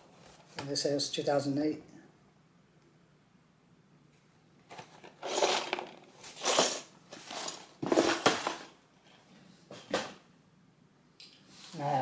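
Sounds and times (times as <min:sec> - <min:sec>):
boxes being handled: 0:04.7 - 0:08.8.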